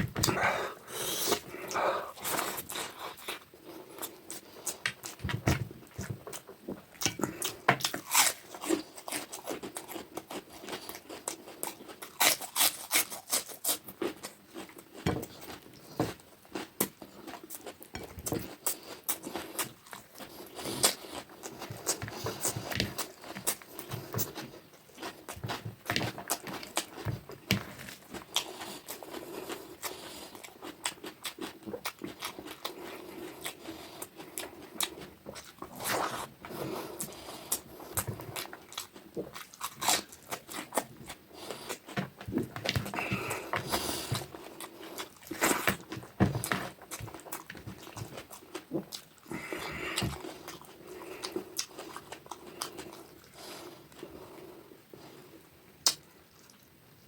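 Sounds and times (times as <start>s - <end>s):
wet chewing and mouth smacks: 55.8s - 56.7s.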